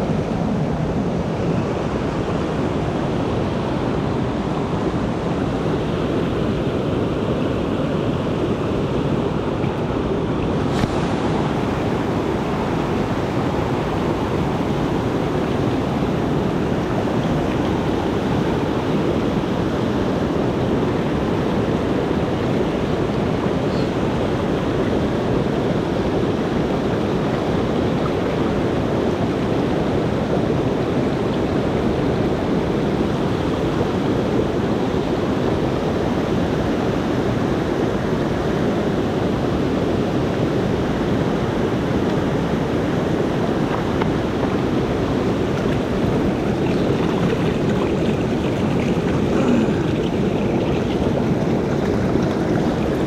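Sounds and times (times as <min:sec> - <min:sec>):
mountain stream rushing: 0:00.0 - 0:53.0.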